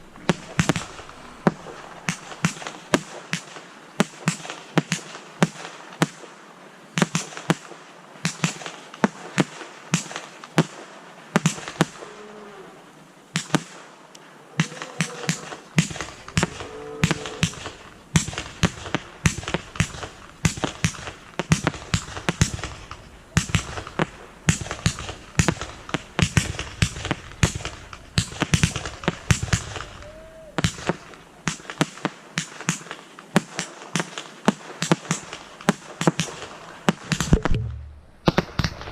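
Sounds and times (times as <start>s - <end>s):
deep fireworks booms: 0.0s - 5.6s, 14.7s - 32.1s, 34.5s - 38.9s
fireworks bangs and cracks: 0.0s - 6.3s, 15.1s - 38.9s.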